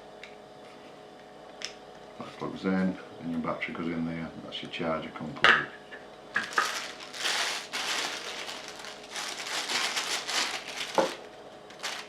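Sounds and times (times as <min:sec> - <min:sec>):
plastic packaging crinkling: 0:06.3 - 0:12.0.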